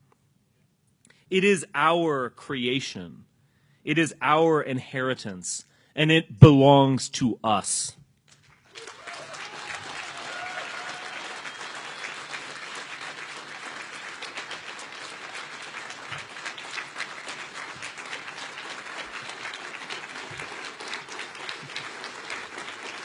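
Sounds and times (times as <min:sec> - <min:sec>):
audience clapping: 0:08.3 - 0:23.0.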